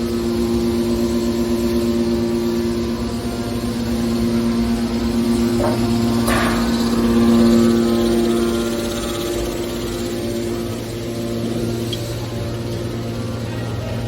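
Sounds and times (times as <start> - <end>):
hydraulic pump hum: 2.8 - 14.0.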